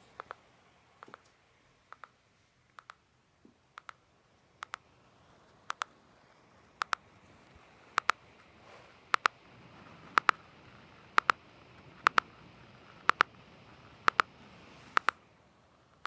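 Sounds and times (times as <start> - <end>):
faint steady hiss: 0.0 - 16.0
laptop double ticking: 0.2 - 0.4, 1.9 - 2.1, 3.8 - 4.0, 4.6 - 4.8, 5.7 - 5.9, 6.8 - 7.0, 8.0 - 8.2, 9.1 - 9.4, 10.1 - 10.4, 11.1 - 11.4, 12.0 - 12.3, 12.9 - 13.4, 14.0 - 14.3.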